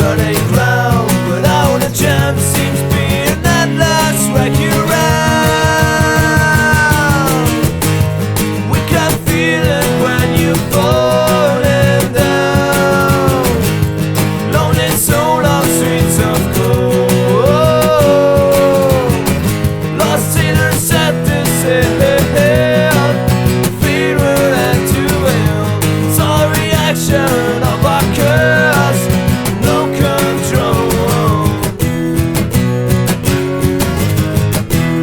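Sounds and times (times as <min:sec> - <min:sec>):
person singing: 0:00.0 - 0:07.8, 0:08.5 - 0:31.9
strummed acoustic guitar: 0:00.0 - 0:35.0.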